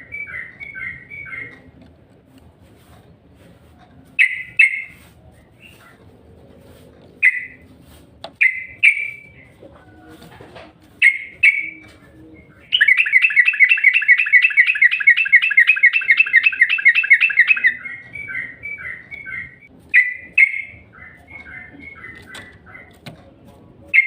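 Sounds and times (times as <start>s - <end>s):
bulbul singing: 8.4s - 9.6s, 11.0s - 23.0s.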